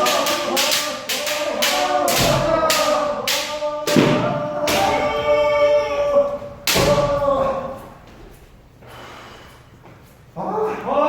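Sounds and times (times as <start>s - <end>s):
bamboo swords striking armour: 0.0s - 5.1s, 6.6s - 7.4s
people shouting: 0.0s - 8.0s.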